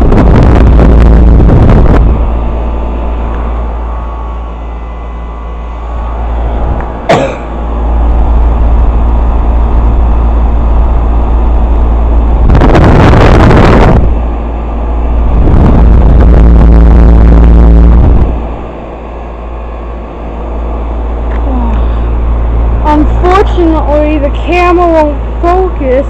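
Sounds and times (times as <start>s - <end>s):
air conditioner humming: 0.0s - 26.0s
loud rushing noise: 9.6s - 18.6s.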